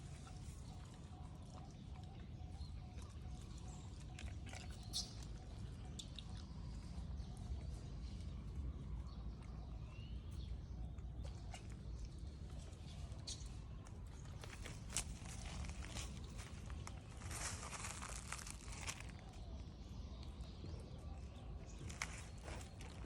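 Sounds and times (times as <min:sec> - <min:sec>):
low outdoor background noise: 0:00.0 - 0:23.0.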